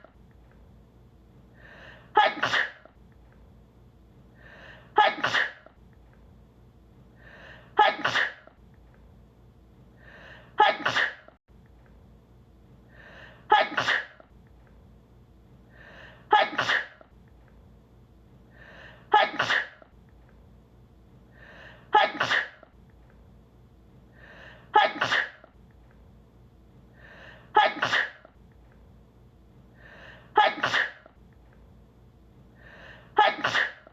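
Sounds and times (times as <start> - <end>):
woman sneezing: 2.1 - 3.0, 4.9 - 5.7, 7.7 - 8.5, 10.5 - 11.4, 13.5 - 14.2, 16.3 - 17.1, 19.1 - 19.9, 21.9 - 22.7, 24.7 - 25.5, 27.5 - 28.4, 30.3 - 31.1, 33.1 - 33.9.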